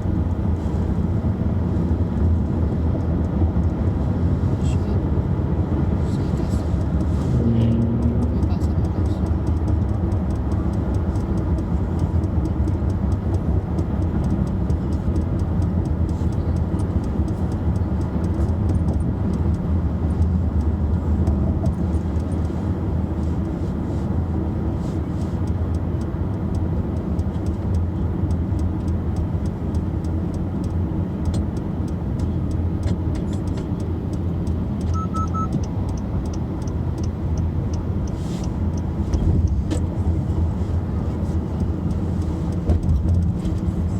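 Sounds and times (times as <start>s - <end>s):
car engine and road rumble: 0.0s - 43.9s
short triple beep: 34.9s - 35.6s.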